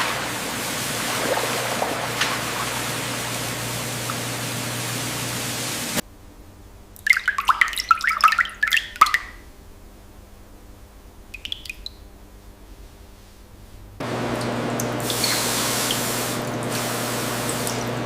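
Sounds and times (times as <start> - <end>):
running tap water: 0.0 - 6.0, 7.0 - 9.4, 14.0 - 18.0
water dripping and splashing: 0.0 - 6.0, 7.0 - 9.4, 11.3 - 12.0, 14.3 - 18.0.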